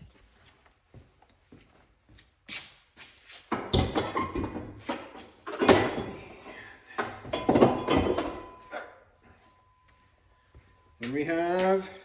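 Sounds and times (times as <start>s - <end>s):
heavy metal clunks and knocks: 7.0s - 8.6s.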